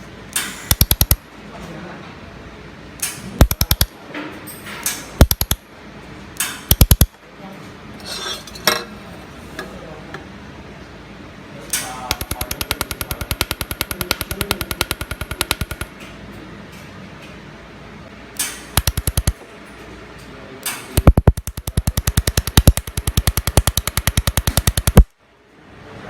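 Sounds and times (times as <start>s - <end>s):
laser welder sharp ticks: 0.3s - 1.2s, 3.0s - 3.9s, 5.2s - 5.6s, 6.4s - 7.1s, 11.7s - 15.9s, 18.4s - 19.4s, 20.6s - 25.1s.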